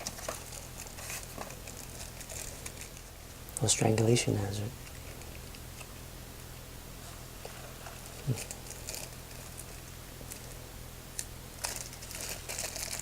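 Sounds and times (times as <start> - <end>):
paper or plastic crinkling: 0.0 - 3.1, 7.4 - 10.6, 11.6 - 13.0
low electrical hum: 0.0 - 13.0.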